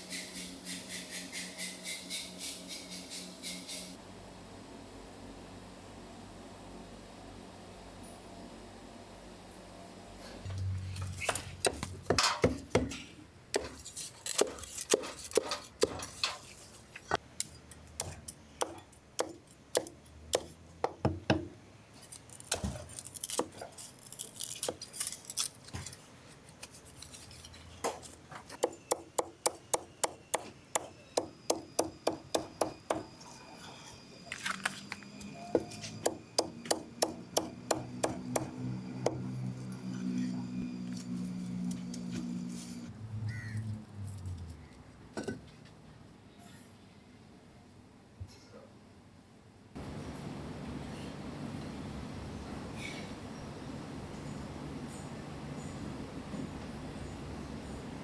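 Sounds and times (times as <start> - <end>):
cleaver chopping on a board: 36.0 - 38.5.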